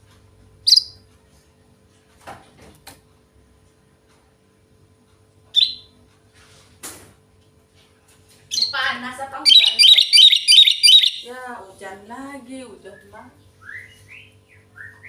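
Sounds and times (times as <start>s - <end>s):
bird sharp high calls: 0.7s - 1.0s, 9.4s - 11.3s.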